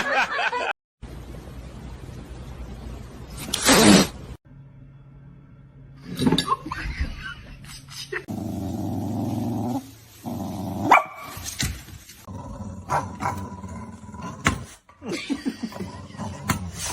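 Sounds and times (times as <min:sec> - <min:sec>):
dog growling: 0:08.3 - 0:11.0, 0:12.3 - 0:14.8, 0:15.5 - 0:16.9
dog barking: 0:10.9 - 0:11.3.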